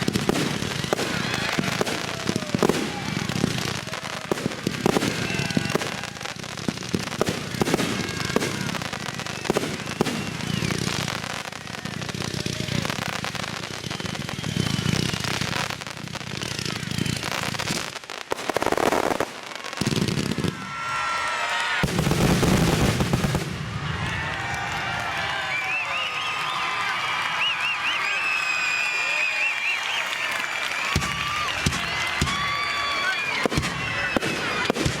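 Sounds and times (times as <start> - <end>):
crowd cheering: 0.0 - 35.0
fireworks bursting and crackling: 0.0 - 35.0.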